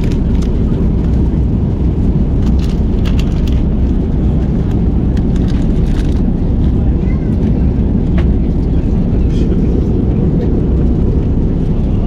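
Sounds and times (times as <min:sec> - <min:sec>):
airplane cabin rumble: 0:00.0 - 0:12.0
faint voices: 0:05.7 - 0:12.0.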